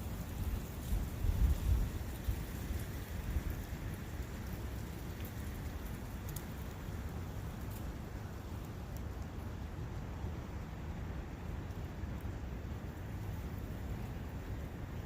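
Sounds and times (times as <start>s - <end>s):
faint high ticks: 4.5s - 8.0s.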